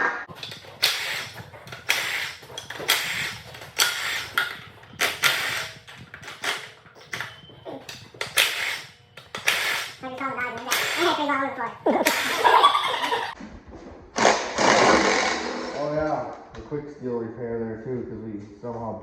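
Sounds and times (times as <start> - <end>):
metal tool clanks and scrapes: 0.3 - 11.2.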